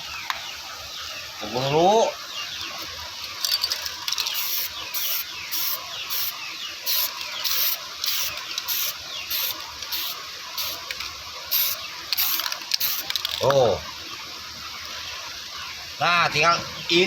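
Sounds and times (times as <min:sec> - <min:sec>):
spray paint can hissing: 0:03.4 - 0:13.4.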